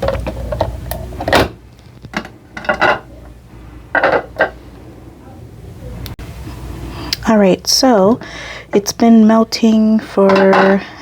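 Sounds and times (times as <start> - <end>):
objects knocking and clattering: 0.0 - 3.1, 3.9 - 4.6, 10.2 - 10.8.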